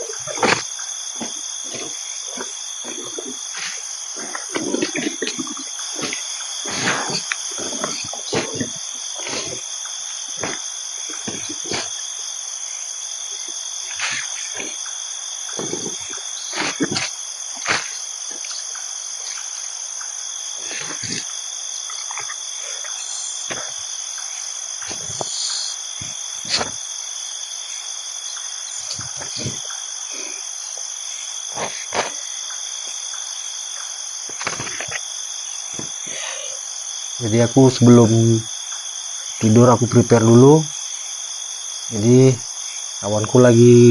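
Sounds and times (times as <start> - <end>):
rustling: 0.0 - 26.9
insects chirring: 0.0 - 43.9.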